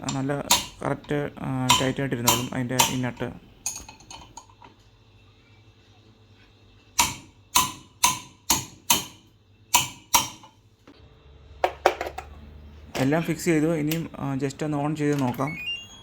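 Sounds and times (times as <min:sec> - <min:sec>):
hammer tapping on metal: 0:00.0 - 0:00.8, 0:01.6 - 0:04.4, 0:07.0 - 0:10.6.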